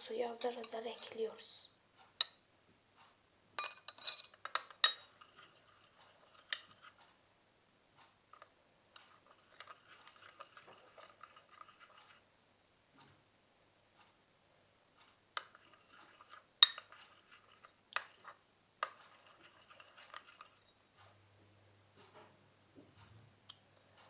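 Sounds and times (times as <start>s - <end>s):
spoon scraping slime: 0.2s - 1.3s, 3.9s - 7.2s, 8.3s - 12.3s, 15.0s - 21.2s
spoon clinking against bowl: 3.6s - 6.8s, 15.4s - 20.8s.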